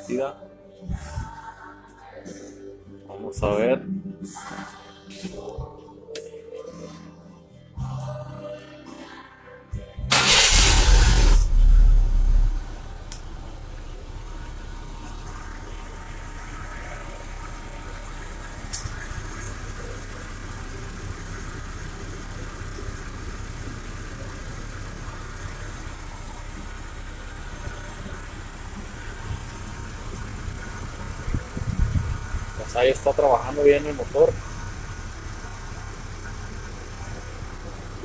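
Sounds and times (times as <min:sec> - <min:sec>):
car engine idling: 0:10.1 - 0:38.0.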